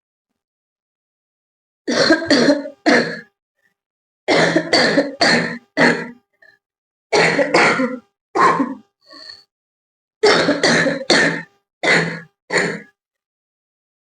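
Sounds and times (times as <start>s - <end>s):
woman coughing: 1.9s - 3.3s, 4.3s - 6.2s, 7.2s - 8.9s, 10.2s - 12.9s.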